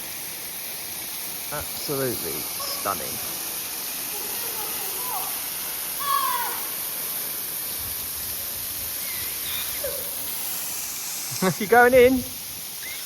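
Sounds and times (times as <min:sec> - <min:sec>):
waterfall rushing: 0:01.6 - 0:07.4
faint distant shout: 0:06.0 - 0:06.7.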